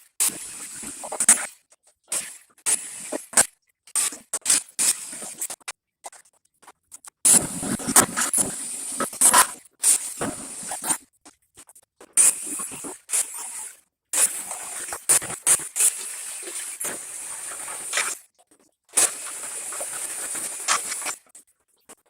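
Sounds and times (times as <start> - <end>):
metal scraping: 7.3 - 9.5, 10.2 - 11.0.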